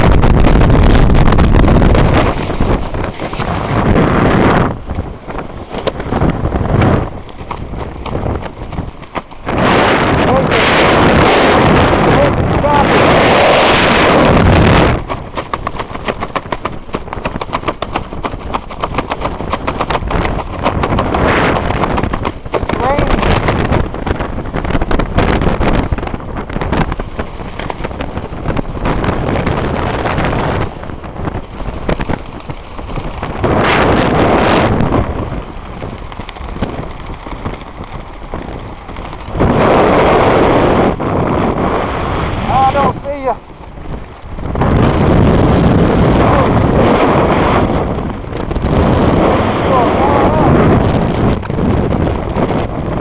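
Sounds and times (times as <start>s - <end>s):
crackling ticks: 0.0s - 12.8s, 14.3s - 39.6s, 47.8s - 49.2s
wind on microphone: 0.0s - 53.0s.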